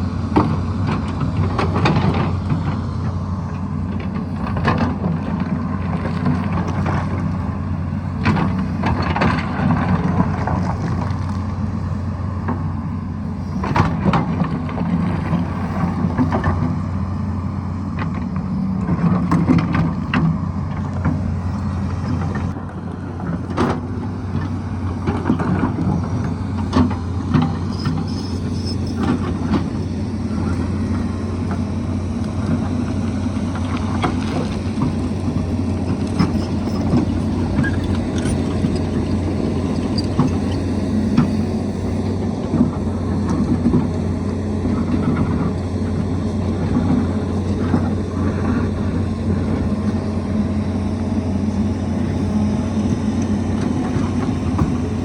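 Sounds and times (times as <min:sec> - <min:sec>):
excavator diesel engine running: 0:00.0 - 0:55.0
rock and soil clattering: 0:23.4 - 0:55.0.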